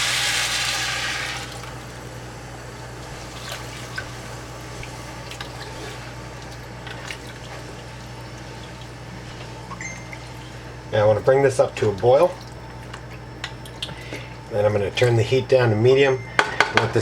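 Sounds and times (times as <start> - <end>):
frying sizzle in a pot: 0.0 - 6.1.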